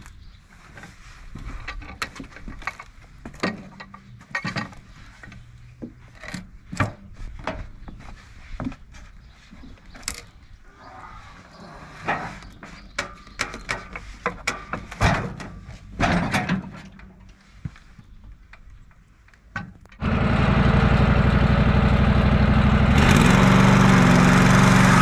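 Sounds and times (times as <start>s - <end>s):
wooden knocks and clatter: 12.1s - 17.3s.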